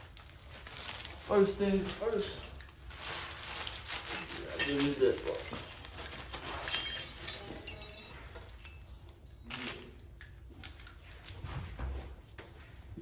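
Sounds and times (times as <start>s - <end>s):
metal lock parts clicking and rattling: 4.1s - 5.7s.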